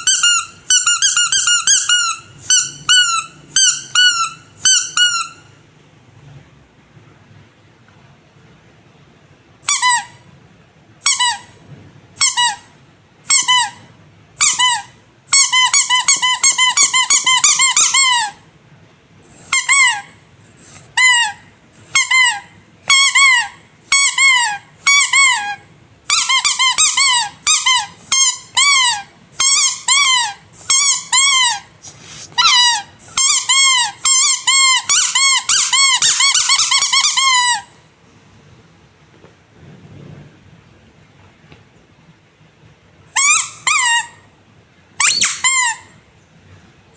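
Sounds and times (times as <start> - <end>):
squeaky toy squeaks: 0.0 - 5.6, 9.6 - 10.3, 11.0 - 11.6, 12.2 - 18.5, 19.3 - 37.8, 43.1 - 44.3, 45.0 - 46.0.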